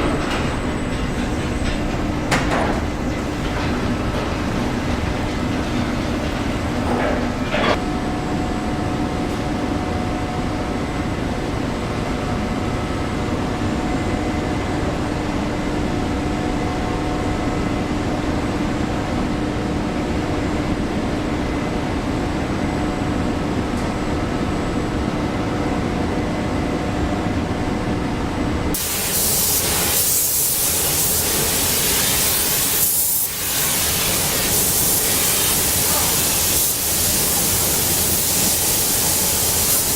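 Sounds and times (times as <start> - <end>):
loud steady hiss: 28.8 - 39.9.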